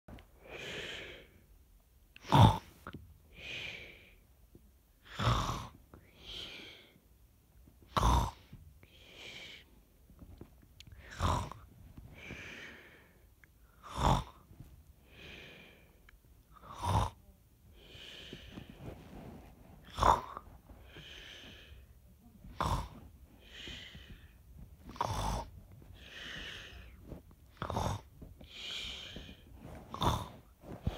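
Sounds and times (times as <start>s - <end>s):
person snoring: 2.2s - 2.9s, 5.0s - 6.8s, 7.9s - 9.7s, 10.9s - 13.1s, 13.8s - 14.5s, 16.5s - 18.8s, 19.8s - 30.9s.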